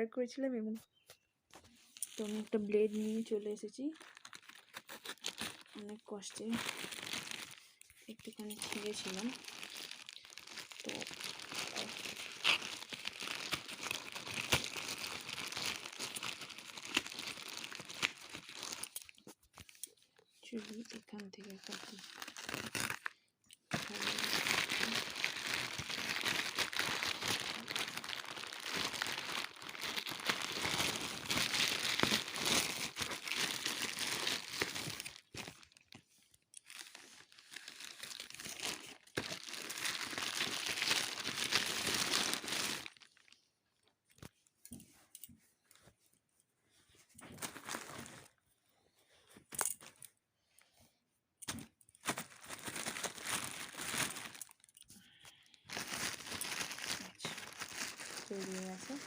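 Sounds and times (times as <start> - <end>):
wrapping crinkling and crackling: 1.2 - 46.0, 46.9 - 48.5, 51.5 - 59.0
packaging being cut and torn: 4.0 - 5.7, 8.4 - 19.0, 21.9 - 23.1, 23.7 - 35.6.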